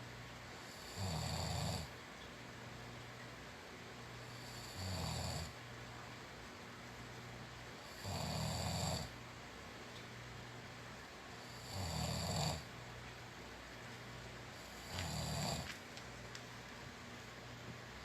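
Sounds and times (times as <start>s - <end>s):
person snoring: 0.8s - 1.9s, 7.9s - 9.1s, 11.5s - 12.6s, 14.6s - 15.7s.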